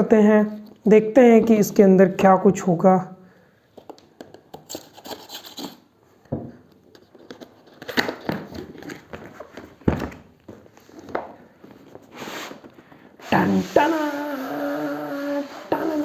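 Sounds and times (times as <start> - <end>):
cardboard packaging rustling and tearing: 6.9 - 12.7.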